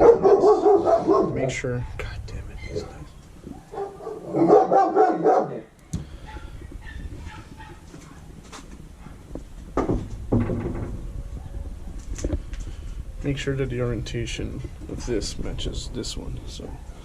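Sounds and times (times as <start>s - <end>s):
dogs barking: 0.0s - 2.1s, 2.7s - 9.3s, 11.3s - 12.0s, 16.6s - 17.0s.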